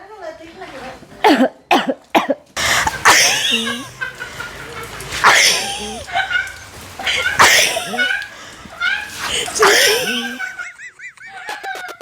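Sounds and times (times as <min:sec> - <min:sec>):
person coughing: 0:01.3 - 0:03.9, 0:05.2 - 0:06.1, 0:07.2 - 0:08.1, 0:09.3 - 0:10.5.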